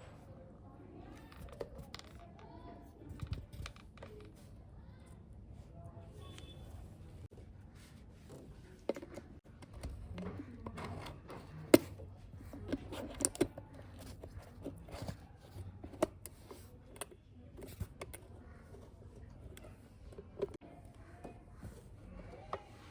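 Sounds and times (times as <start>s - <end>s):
plastic toys clicking and tapping: 1.0s - 4.9s, 8.3s - 22.9s.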